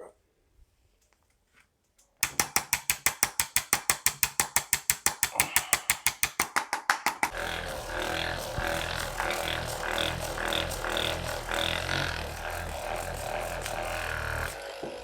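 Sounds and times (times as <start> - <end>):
rapid mechanical clicking: 7.3 - 14.7
steady held tones: 7.3 - 15.0.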